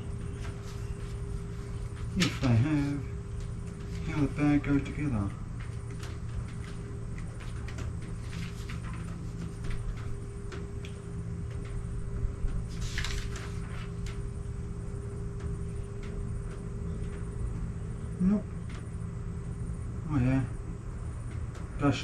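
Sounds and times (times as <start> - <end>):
steady low hum: 0.0 - 22.0
paper pages rustling: 0.2 - 11.8, 12.4 - 14.2.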